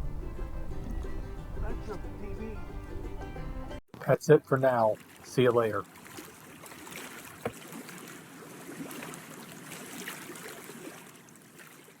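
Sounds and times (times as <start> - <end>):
water lapping against boat hull: 4.0 - 12.0
small splashes: 4.7 - 12.0.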